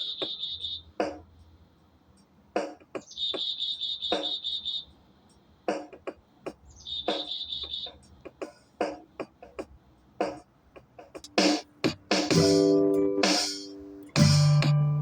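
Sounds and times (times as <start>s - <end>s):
birds giving harsh calls: 0.0s - 1.1s, 3.0s - 5.0s, 6.6s - 8.0s
high rapid bird trill: 0.0s - 1.2s, 3.0s - 5.0s, 6.6s - 8.0s.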